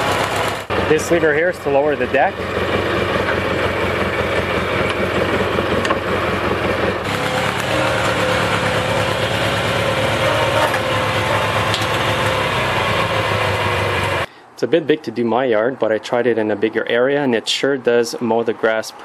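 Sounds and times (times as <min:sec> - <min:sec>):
mower engine running: 0:00.0 - 0:14.3
steady whine: 0:00.0 - 0:14.3.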